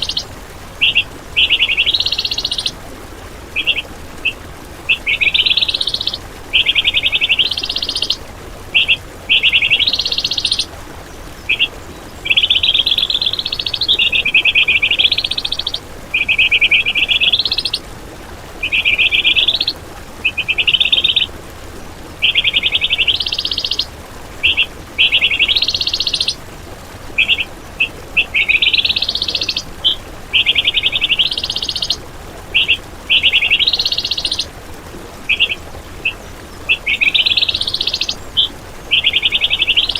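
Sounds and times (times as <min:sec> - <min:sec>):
bird chip notes: 0:00.0 - 0:02.8, 0:03.6 - 0:10.7, 0:11.5 - 0:17.8
songbird rattling trills: 0:00.0 - 0:02.8, 0:03.6 - 0:17.8, 0:18.6 - 0:21.3, 0:22.2 - 0:26.4, 0:27.2 - 0:34.5, 0:35.3 - 0:39.9.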